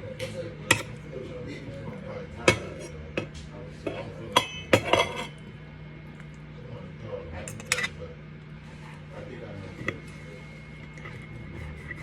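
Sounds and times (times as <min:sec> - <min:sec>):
dishes and utensils clattering: 0:02.4 - 0:05.4.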